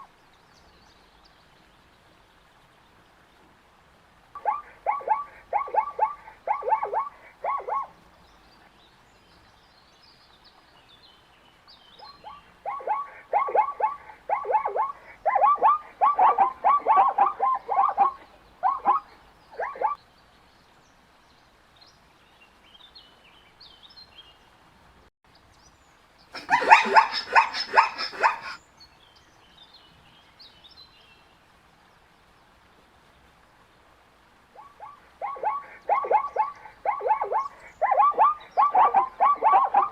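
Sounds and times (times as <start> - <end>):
zebras yipping barks: 4.4 - 7.9, 12.1 - 20.0, 26.4 - 28.6, 34.6 - 39.9
harsh zebra call: 26.4 - 28.6.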